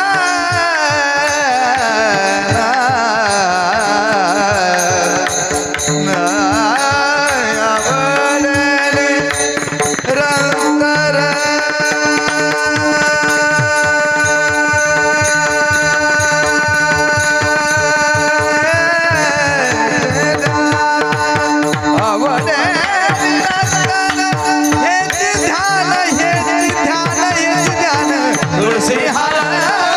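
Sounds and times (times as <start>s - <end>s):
person singing: 0.0s - 29.9s.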